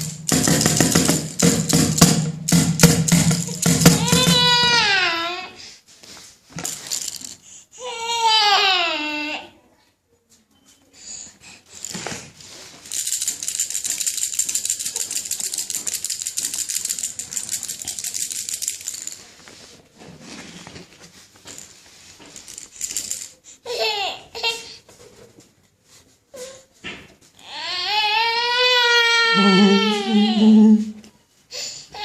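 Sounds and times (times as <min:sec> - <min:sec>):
baby rattle shaking: 0:00.0 - 0:04.8, 0:06.6 - 0:07.5, 0:11.7 - 0:19.6, 0:21.4 - 0:23.5
baby crying out: 0:04.0 - 0:05.6, 0:27.4 - 0:30.9.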